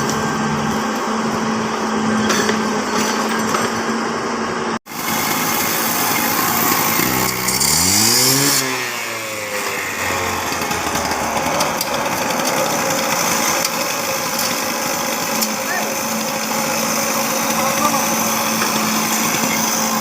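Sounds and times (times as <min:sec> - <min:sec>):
small engine clattering: 0:05.0 - 0:20.0.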